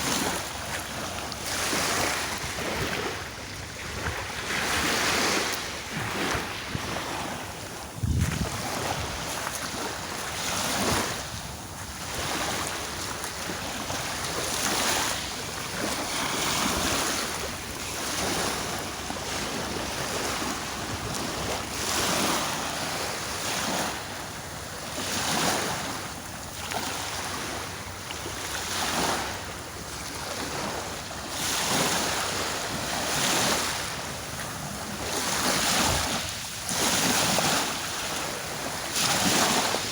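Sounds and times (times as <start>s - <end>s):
wind buffeting microphone: 0.0s - 22.4s
sea waves washing onto shore: 0.0s - 39.9s.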